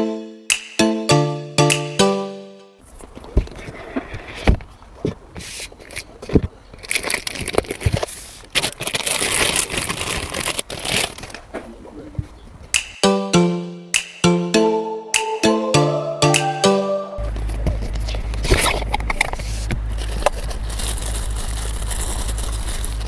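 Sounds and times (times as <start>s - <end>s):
music with plucked notes: 0.0s - 2.8s, 13.0s - 17.8s
crackling rustling hiss: 2.8s - 13.0s, 17.2s - 23.0s.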